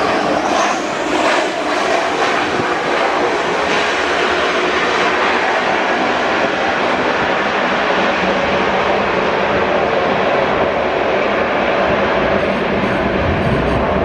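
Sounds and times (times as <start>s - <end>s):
jet engines running: 0.0s - 14.0s.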